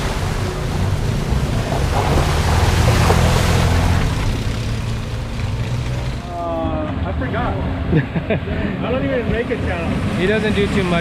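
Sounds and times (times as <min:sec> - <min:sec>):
water splashing: 0:00.0 - 0:06.4
off-road vehicle engine running: 0:00.0 - 0:11.0.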